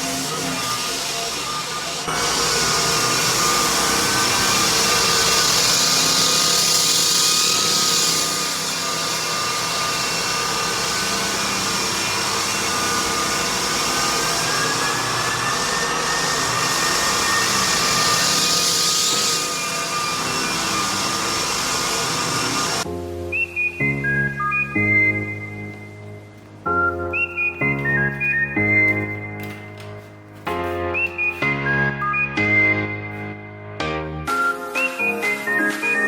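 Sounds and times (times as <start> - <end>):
floor machine motor whine: 0.0 - 22.8.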